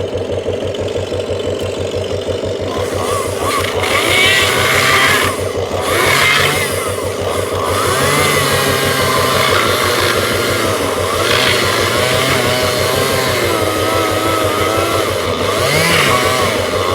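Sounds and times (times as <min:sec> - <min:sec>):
engine chugging steadily: 0:00.0 - 0:16.9.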